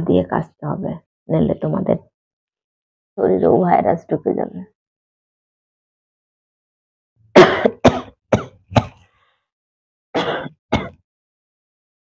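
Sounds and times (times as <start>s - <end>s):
woman coughing: 7.4s - 9.0s, 10.2s - 11.0s.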